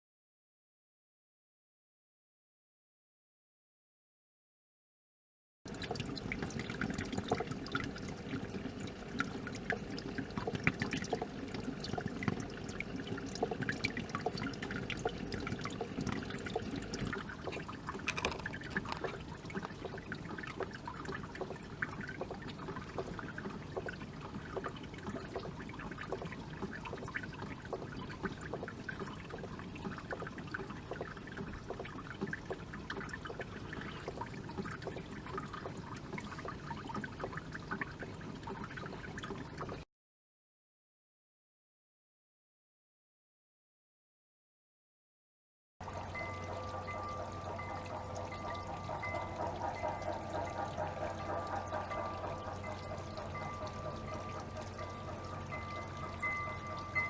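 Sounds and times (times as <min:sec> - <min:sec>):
water running and trickling: 0:05.7 - 0:39.8, 0:45.8 - 0:57.0
water splashes and drips: 0:05.7 - 0:39.9, 0:45.8 - 0:57.0.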